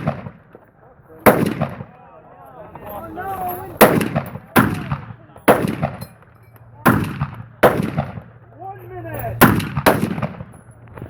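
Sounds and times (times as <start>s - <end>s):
gunshots with echo: 0.0s - 0.5s, 1.2s - 1.9s, 3.8s - 6.1s, 6.8s - 8.3s, 9.4s - 10.6s.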